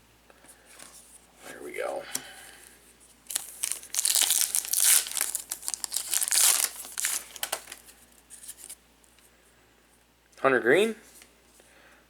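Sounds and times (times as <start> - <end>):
wrapper crinkling and tearing: 3.3 - 7.9.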